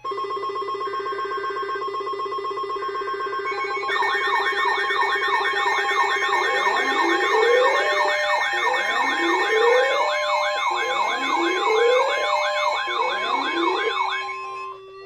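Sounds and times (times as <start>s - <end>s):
fast wailing electronic siren: 3.4s - 15.0s
slow rising siren sweep: 3.5s - 15.0s
steady high tones: 3.5s - 15.0s.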